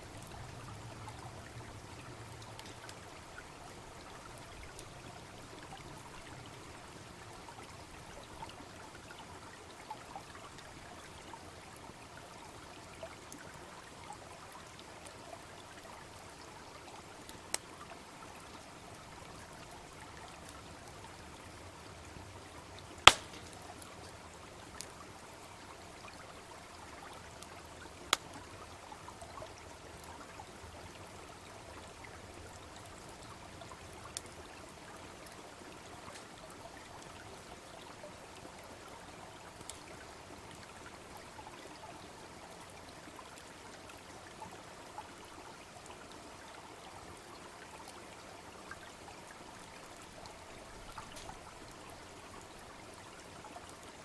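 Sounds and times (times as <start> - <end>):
brook babbling: 0.0 - 54.0
campfire snapping and popping: 2.4 - 3.0, 23.0 - 23.9, 28.1 - 28.3.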